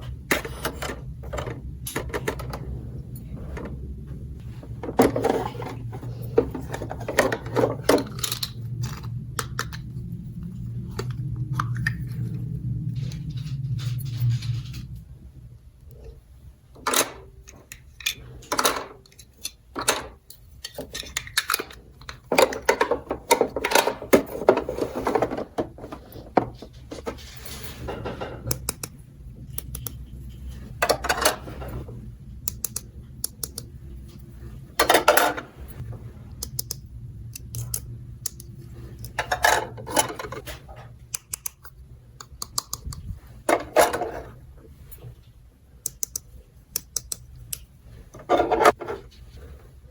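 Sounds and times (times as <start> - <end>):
plastic toy pieces clattering: 16.8 - 26.7.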